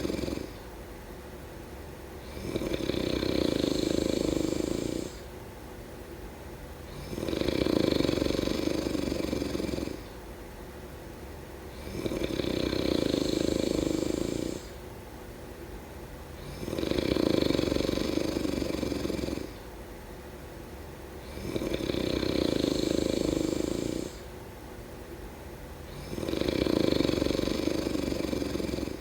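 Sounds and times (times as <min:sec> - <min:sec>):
person snoring: 0:00.0 - 0:00.6, 0:02.2 - 0:05.2, 0:06.9 - 0:10.1, 0:11.7 - 0:14.8, 0:16.4 - 0:19.6, 0:21.2 - 0:24.2, 0:25.9 - 0:29.0
quiet breathing: 0:00.0 - 0:00.7, 0:02.2 - 0:05.4, 0:11.6 - 0:14.8, 0:21.2 - 0:24.4, 0:25.8 - 0:29.0.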